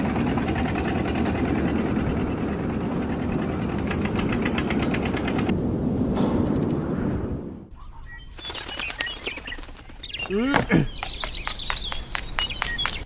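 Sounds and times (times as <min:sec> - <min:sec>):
fast ticking rattle: 0:00.0 - 0:05.5
toy tractor motor running: 0:00.0 - 0:05.5.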